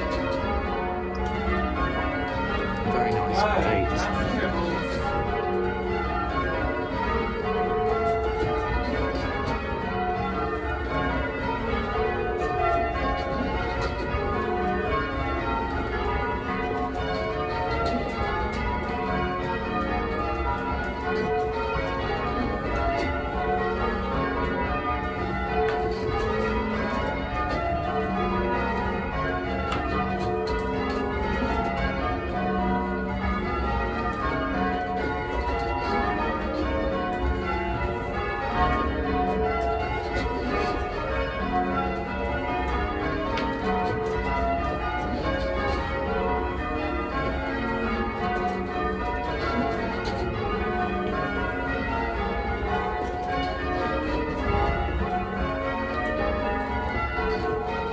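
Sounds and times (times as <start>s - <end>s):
church bells ringing changes: 0.0s - 57.9s.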